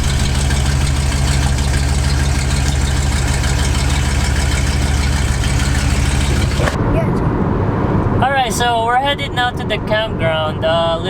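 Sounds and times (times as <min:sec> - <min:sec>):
engine idling: 0:00.0 - 0:06.8.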